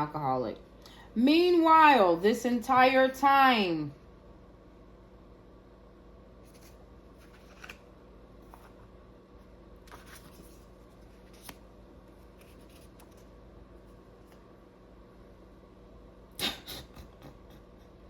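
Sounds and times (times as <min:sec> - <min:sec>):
cards rustling and clicking: 0:06.4 - 0:08.8, 0:09.8 - 0:13.3.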